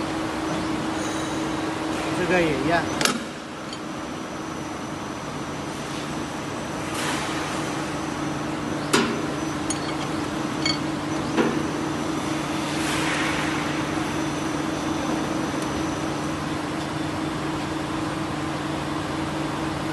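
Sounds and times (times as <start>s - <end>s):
ringing metal pings: 9.6s - 10.9s
sharp metallic clanks: 9.6s - 10.9s.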